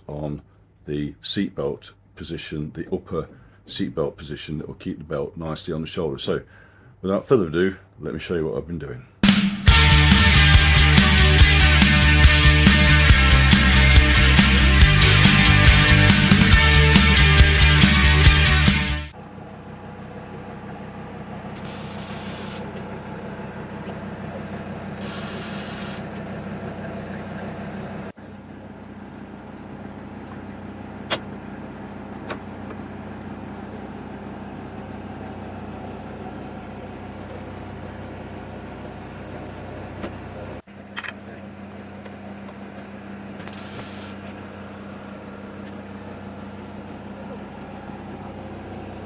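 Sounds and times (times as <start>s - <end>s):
low machine hum: 19.1s - 49.0s
hissing bursts: 21.6s - 22.8s, 25.0s - 26.1s, 43.4s - 44.2s.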